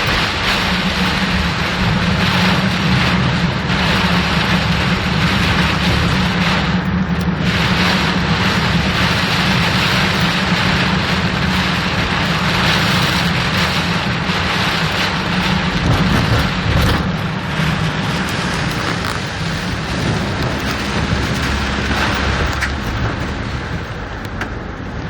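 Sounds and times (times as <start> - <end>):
water spray from car: 0.0 - 24.3
car rumble: 0.0 - 25.0
heavy rain: 0.0 - 25.0.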